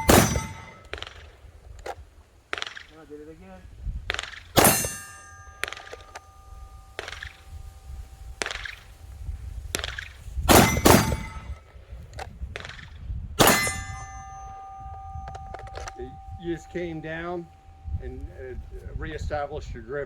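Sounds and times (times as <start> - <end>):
bullets ringing steel targets: 0.0 - 1.4, 4.1 - 9.1, 9.8 - 11.8, 12.6 - 18.7.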